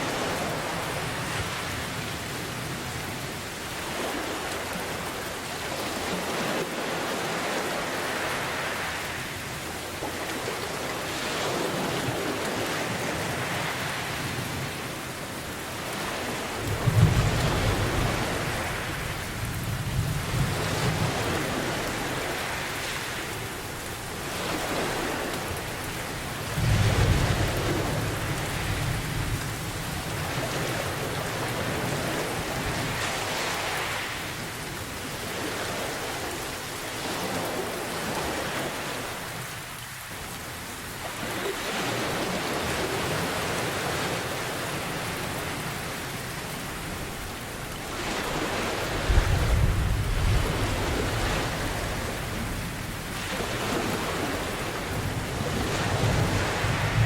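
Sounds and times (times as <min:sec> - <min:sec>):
steady rain: 0:00.0 - 0:57.0
low thunder rumbles: 0:16.6 - 0:22.3, 0:48.9 - 0:53.2.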